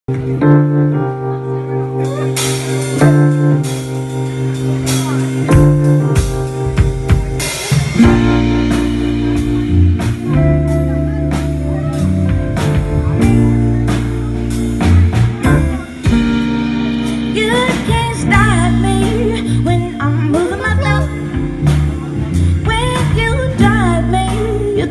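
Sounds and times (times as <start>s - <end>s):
bass: 0.0s - 24.9s
drum kit: 0.1s - 24.9s
guitar: 0.1s - 24.9s
person singing: 17.2s - 24.9s.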